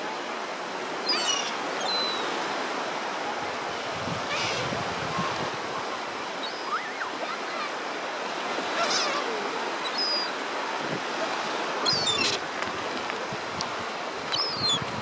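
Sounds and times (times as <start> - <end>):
sea surf washing on beach: 0.0 - 15.0
gulls crying: 4.3 - 12.5.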